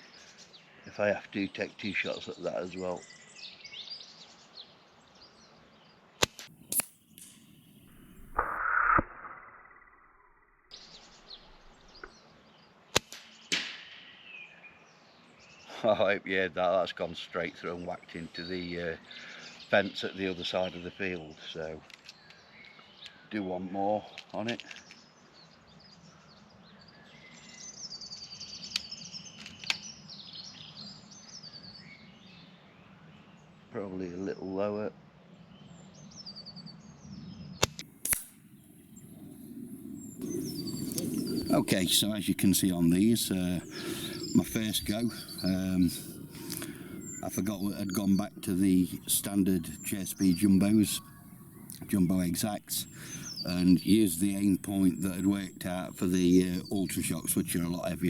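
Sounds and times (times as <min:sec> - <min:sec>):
birds singing: 0:00.0 - 0:09.0, 0:09.6 - 0:58.0
air rifle sharp cracks: 0:13.0 - 0:14.1, 0:37.6 - 0:38.5
air rifle cracks: 0:37.6 - 0:38.4
rasping noise: 0:39.0 - 0:58.0.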